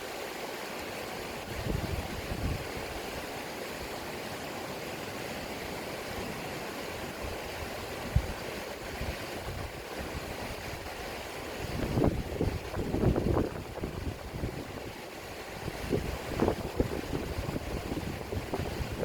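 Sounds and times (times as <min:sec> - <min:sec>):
river water flowing over rocks: 0:00.0 - 0:19.0
wind buffeting microphone: 0:01.4 - 0:03.2, 0:07.1 - 0:19.0.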